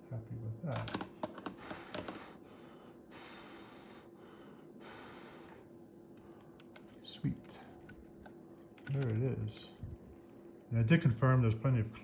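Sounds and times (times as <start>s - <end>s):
faint steady hum: 0.0s - 12.0s
soft breaths: 1.5s - 8.0s.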